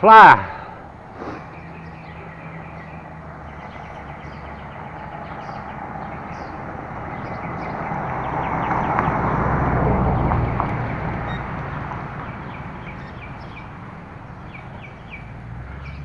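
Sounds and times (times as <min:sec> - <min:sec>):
vehicle rumble approaching: 0:00.6 - 0:16.0.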